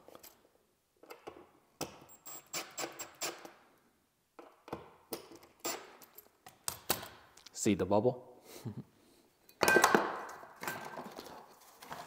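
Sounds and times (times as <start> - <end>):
tools clicking and scraping: 4.6 - 7.2.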